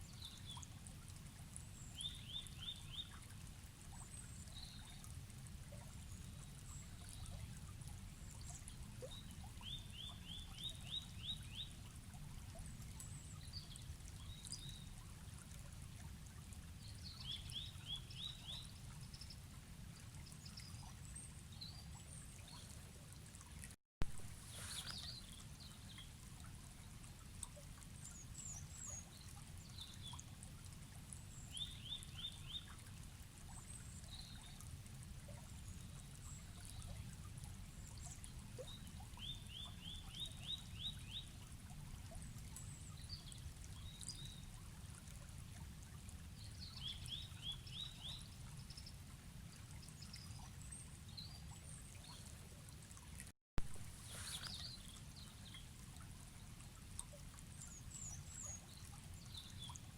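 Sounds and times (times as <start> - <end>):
river flowing: 24.1 - 26.0, 53.7 - 56.1
songbirds calling: 24.3 - 26.0, 53.9 - 55.6.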